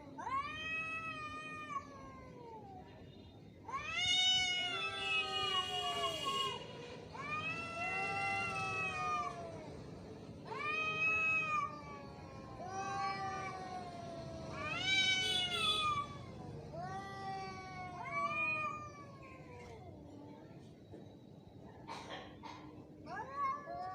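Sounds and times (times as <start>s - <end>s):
angry cat yowling: 7.2s - 9.6s, 10.5s - 19.8s.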